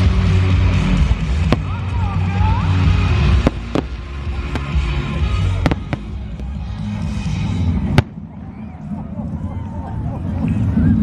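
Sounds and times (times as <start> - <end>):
fireworks exploding: 1.1 - 2.0, 2.9 - 6.8, 7.8 - 8.2.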